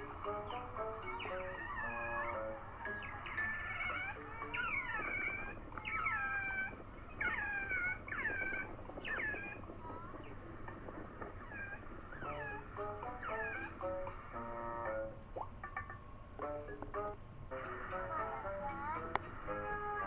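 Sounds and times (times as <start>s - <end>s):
stepped musical notes: 0.0s - 1.6s, 12.2s - 15.7s, 16.4s - 20.0s
high animal calls: 0.1s - 14.4s.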